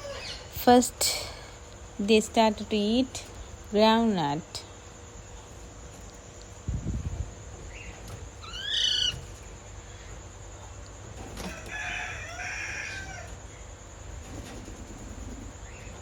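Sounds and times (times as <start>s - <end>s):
parakeet squawk: 8.4s - 9.2s.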